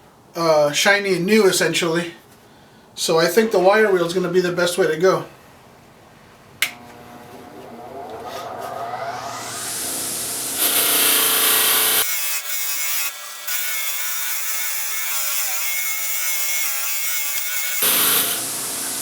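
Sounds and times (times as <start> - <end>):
grinder whining: 6.6 - 19.0.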